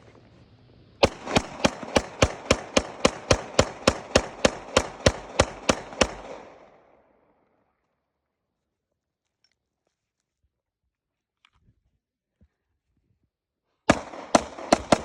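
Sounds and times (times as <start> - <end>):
rapid pistol shots: 1.0 - 7.0, 13.9 - 15.0.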